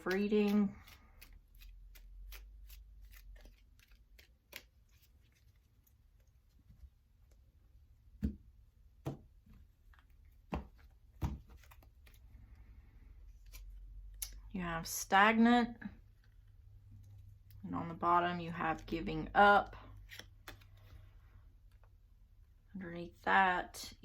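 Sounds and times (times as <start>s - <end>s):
cards being shuffled: 0.0s - 6.9s, 9.1s - 12.4s, 13.3s - 14.2s, 19.9s - 21.1s.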